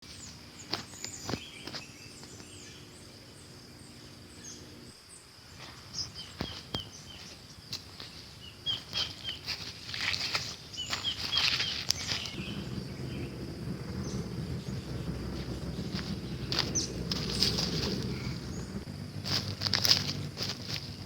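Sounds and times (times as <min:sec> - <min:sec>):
birds chirping: 0:00.0 - 0:21.0
insect buzz: 0:00.1 - 0:21.0
low hum: 0:10.8 - 0:21.0.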